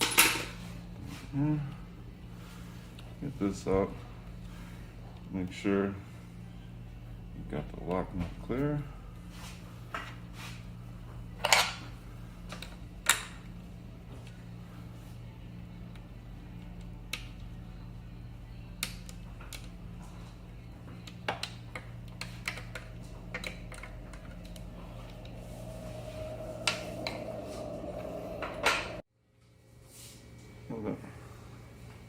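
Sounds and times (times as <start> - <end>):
low hum: 21.8 - 29.1.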